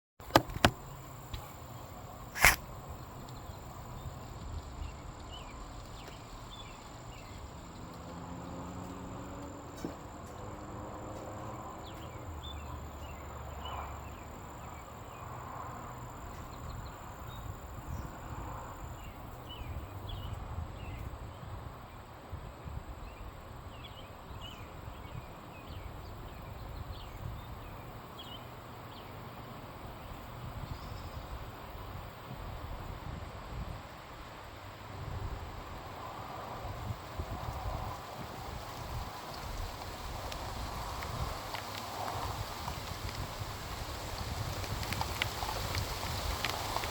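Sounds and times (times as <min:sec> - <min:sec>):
sharp clicks: 0:02.4 - 0:02.6.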